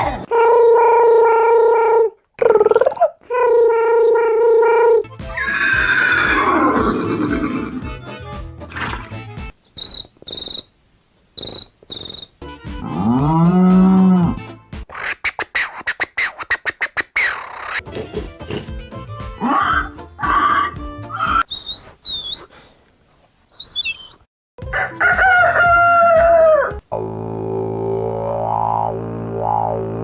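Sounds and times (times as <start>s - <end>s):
low hum: 26.9s - 30.0s
rising and falling pitched tone: 26.9s - 30.0s.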